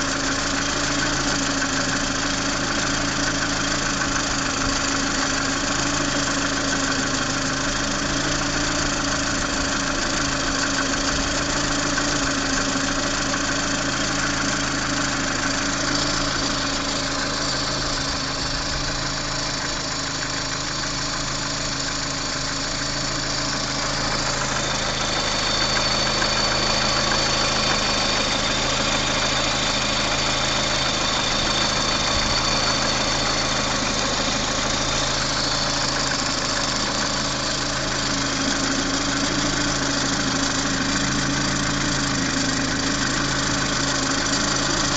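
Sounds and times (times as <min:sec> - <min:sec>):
car engine idling with knock: 0:00.0 - 0:44.9.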